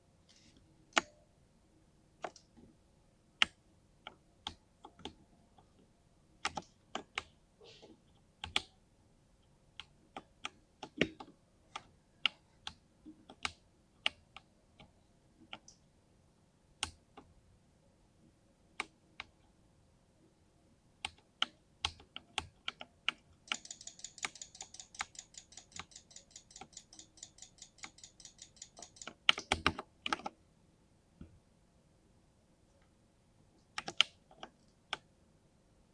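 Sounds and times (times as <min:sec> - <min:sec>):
mechanical keyboard key presses: 0:23.5 - 0:30.3.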